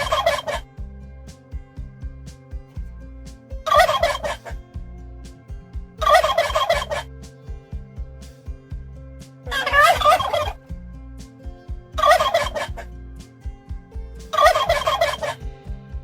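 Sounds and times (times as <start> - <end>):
soft background music: 0.0 - 16.0.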